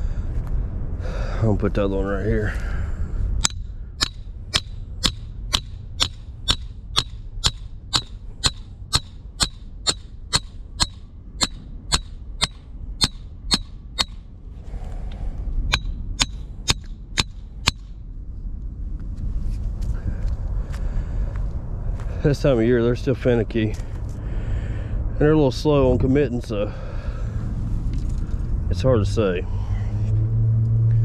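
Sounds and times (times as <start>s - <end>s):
hammer blows on stake ringing: 3.4s - 14.2s, 15.7s - 17.9s.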